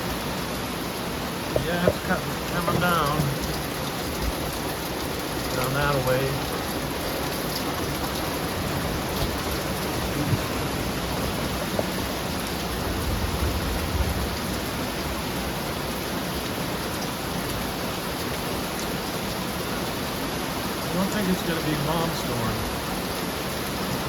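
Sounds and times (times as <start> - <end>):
heavy rain pouring: 0.0 - 24.0
water dripping: 1.5 - 14.7.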